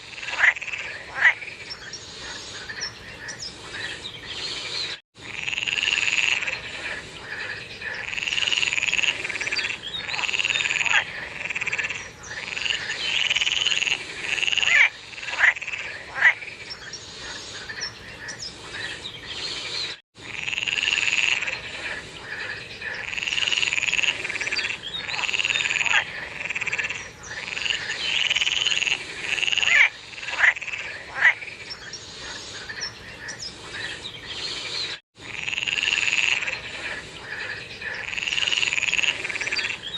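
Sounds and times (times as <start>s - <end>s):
frogs croaking: 0.0s - 19.6s, 20.2s - 34.5s, 35.2s - 39.9s
short sharp frog calls: 5.2s - 18.4s, 20.2s - 33.4s, 35.2s - 39.9s.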